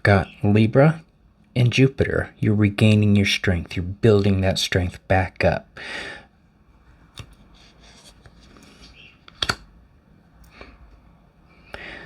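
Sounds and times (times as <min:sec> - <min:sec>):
cards rustling and sliding: 0:06.9 - 0:09.7.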